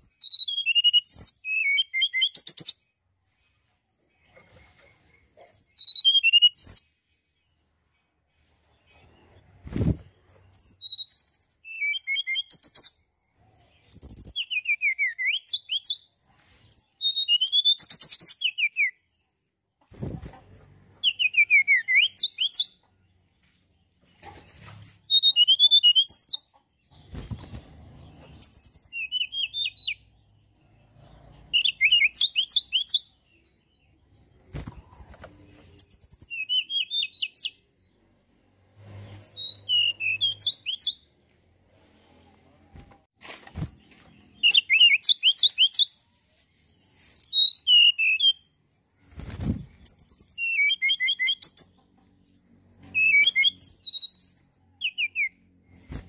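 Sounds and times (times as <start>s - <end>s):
bird singing high whistled notes: 0.0s - 2.8s, 5.4s - 7.0s, 10.5s - 13.0s, 13.9s - 16.1s, 16.7s - 19.1s, 21.0s - 22.8s, 24.8s - 26.3s, 28.4s - 30.2s, 31.6s - 33.2s, 34.8s - 37.6s, 39.1s - 41.1s, 43.6s - 46.0s, 47.0s - 48.5s, 49.7s - 51.7s, 52.8s - 55.4s.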